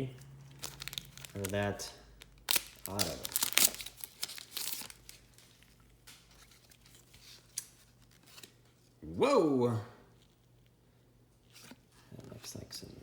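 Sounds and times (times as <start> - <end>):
plastic packaging crinkling: 0.4 - 8.6.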